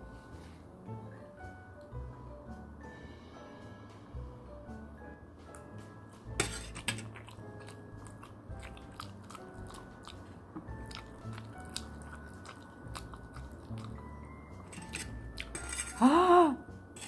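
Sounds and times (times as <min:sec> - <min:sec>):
quiet background music: 0:00.0 - 0:17.0
crunchy biting and chewing: 0:06.8 - 0:16.0.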